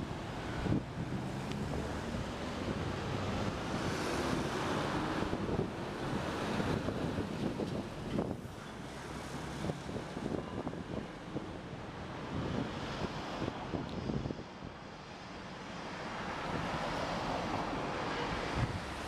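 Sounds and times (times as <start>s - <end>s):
wind buffeting microphone: 0.0s - 8.6s, 9.5s - 14.8s, 18.4s - 19.0s
passing vehicle: 0.0s - 19.0s
traffic noise: 0.0s - 19.0s.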